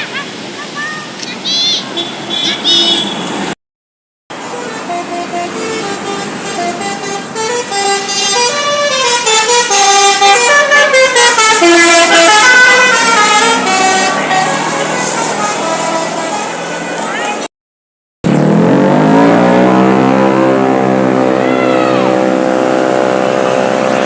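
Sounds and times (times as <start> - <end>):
musical bus horn: 2.0 - 3.4, 4.8 - 17.0, 19.3 - 24.0.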